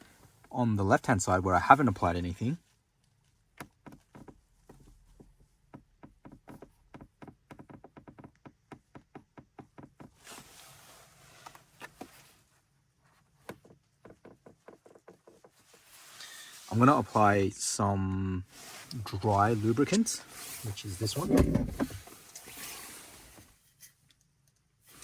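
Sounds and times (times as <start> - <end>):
plastic trim creaking and clicking: 21.1 - 22.0.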